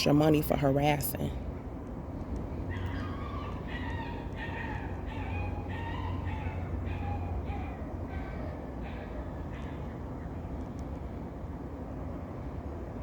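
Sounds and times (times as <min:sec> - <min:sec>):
steady low hum: 0:00.0 - 0:13.0
puppy barking: 0:02.7 - 0:09.8.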